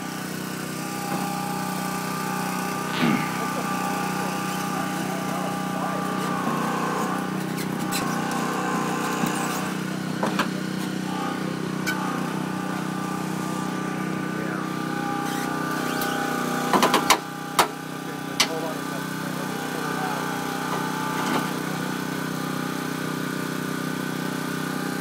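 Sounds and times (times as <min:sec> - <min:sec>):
engine idling: 0:00.0 - 0:25.0.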